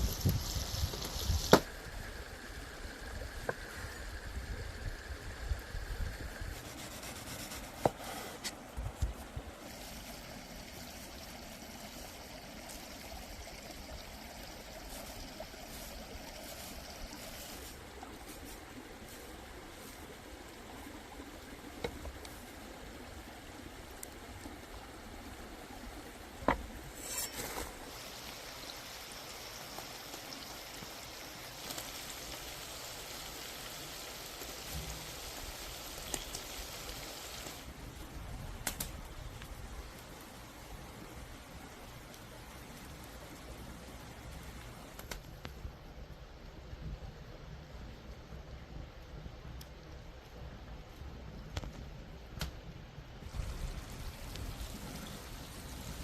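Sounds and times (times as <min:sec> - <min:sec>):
water trickling: 0:09.0 - 0:38.2, 0:53.2 - 0:56.0.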